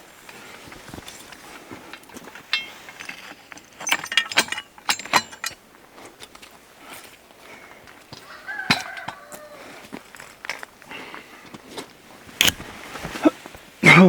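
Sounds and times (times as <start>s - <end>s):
metal hardware clinking and rattling: 1.0s - 6.5s.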